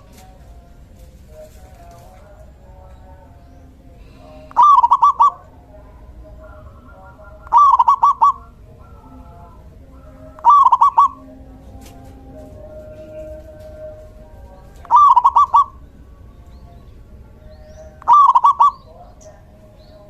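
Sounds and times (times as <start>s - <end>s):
dove cooing: 4.2s - 15.9s, 17.8s - 19.5s.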